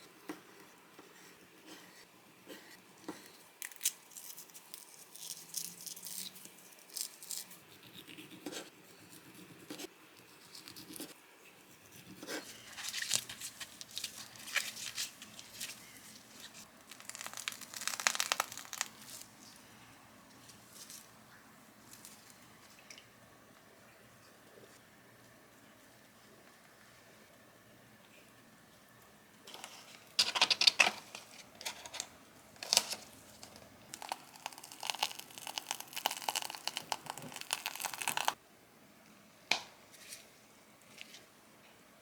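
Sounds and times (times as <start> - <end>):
food packaging crinkling and tearing: 12.7 - 19.6, 29.5 - 38.4.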